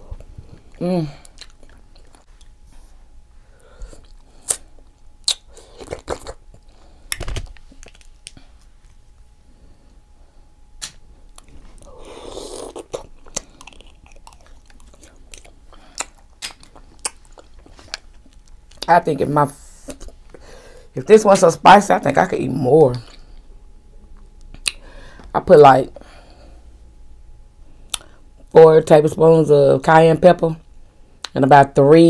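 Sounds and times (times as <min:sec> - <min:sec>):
chewing with wet smacks: 0:00.6 - 0:02.6, 0:12.7 - 0:18.9.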